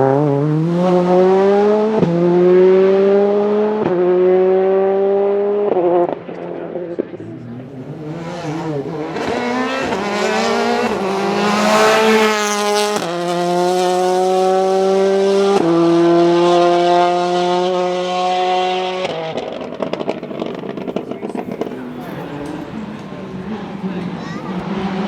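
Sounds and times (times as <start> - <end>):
car engine accelerating hard: 0.0 - 25.0
exhaust crackles: 18.4 - 24.6.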